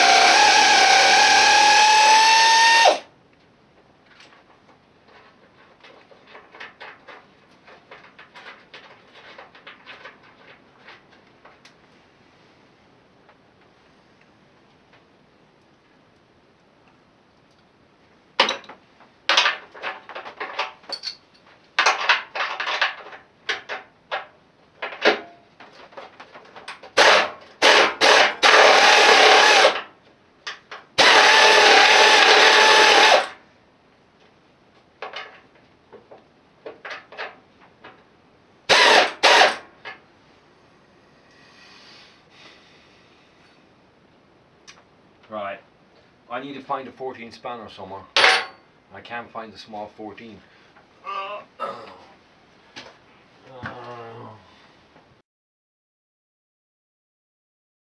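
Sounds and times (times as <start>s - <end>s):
metal tools clattering in toolbox: 19.4s - 23.0s.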